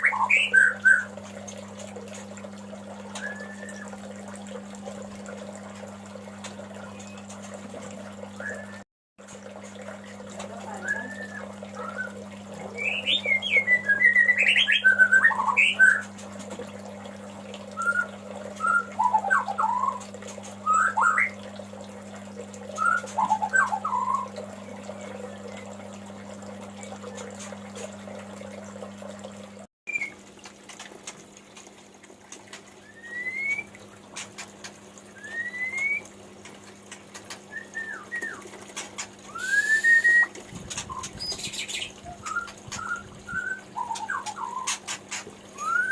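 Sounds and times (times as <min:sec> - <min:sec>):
bird whistling and chirping: 0:00.0 - 0:01.1, 0:03.1 - 0:03.9, 0:08.4 - 0:08.8, 0:10.7 - 0:16.1, 0:17.8 - 0:20.0, 0:20.6 - 0:21.4, 0:22.8 - 0:24.4, 0:32.8 - 0:33.7, 0:35.1 - 0:36.1, 0:37.5 - 0:38.5, 0:39.2 - 0:44.8, 0:45.6 - 0:45.9
steady low hum: 0:00.1 - 0:29.7.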